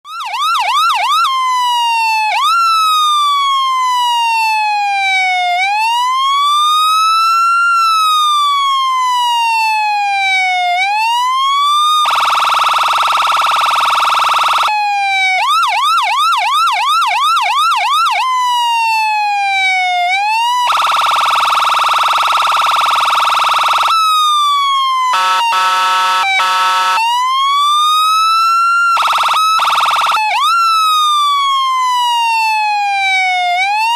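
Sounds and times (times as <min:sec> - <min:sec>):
ambulance siren: 0:00.0 - 0:33.9
buzzing horn blasts: 0:25.1 - 0:27.0.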